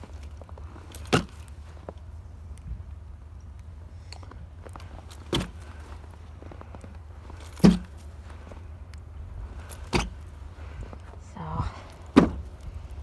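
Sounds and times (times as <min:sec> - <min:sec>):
steady low rumble: 0:00.0 - 0:13.0
sharp thumps: 0:07.4 - 0:08.0.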